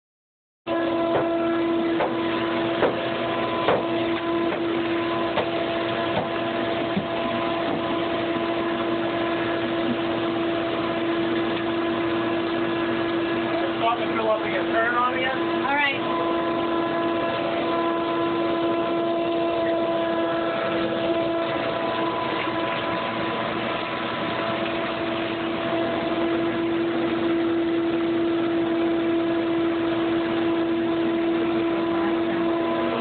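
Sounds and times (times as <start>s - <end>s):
motor humming: 0.7s - 33.0s.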